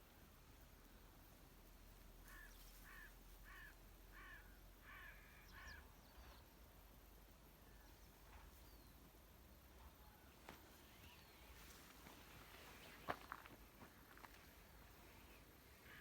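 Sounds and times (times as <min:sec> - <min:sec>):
crow cawing: 0:02.3 - 0:05.8.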